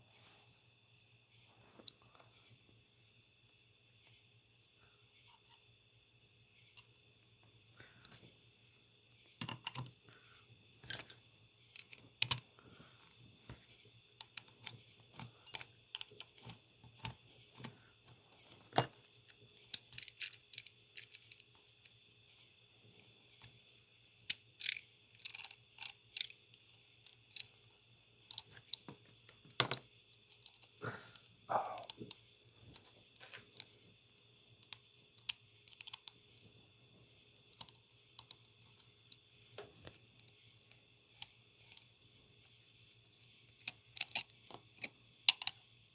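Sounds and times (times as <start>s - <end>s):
faint steady hum and hiss: 0.0s - 45.9s
small metal clicks and taps: 34.6s - 36.2s, 43.6s - 45.6s.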